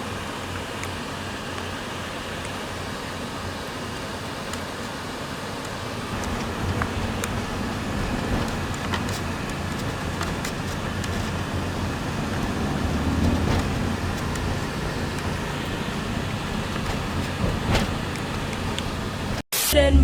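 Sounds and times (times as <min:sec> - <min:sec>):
vehicle rumbling on road: 0:00.0 - 0:19.5
light clicks and knocks: 0:05.6 - 0:19.4.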